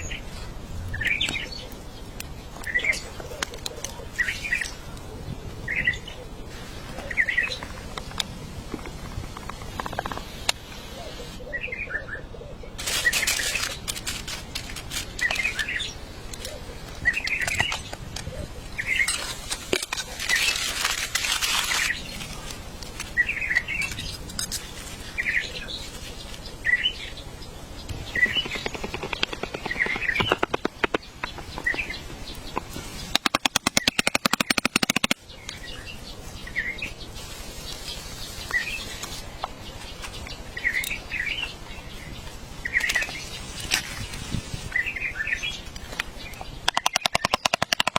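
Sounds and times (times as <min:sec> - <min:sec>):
steady hiss: 0:08.3 - 0:11.4, 0:36.0 - 0:39.7
bird chirping: 0:25.2 - 0:47.9.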